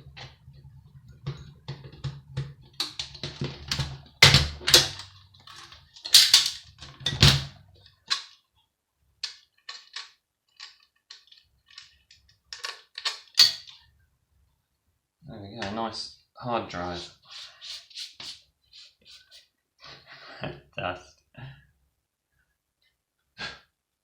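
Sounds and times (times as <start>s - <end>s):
tools and metal parts clicking: 4.6s - 8.4s, 9.2s - 13.8s.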